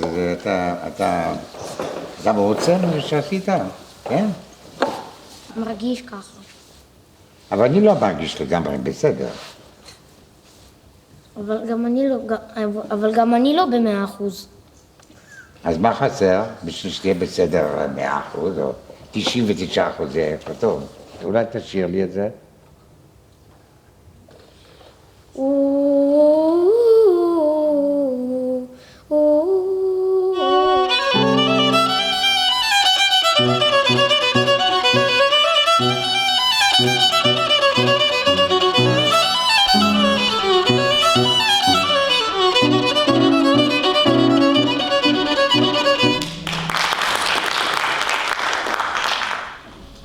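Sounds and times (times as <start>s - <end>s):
violin melody: 30.3s - 46.8s
repeated low chords accompaniment: 33.2s - 46.6s
applause: 46.2s - 49.7s.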